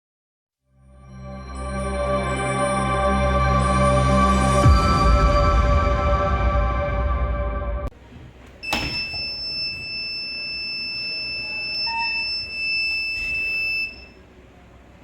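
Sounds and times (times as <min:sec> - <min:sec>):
high-pitched alarm buzzer: 0:08.7 - 0:14.1.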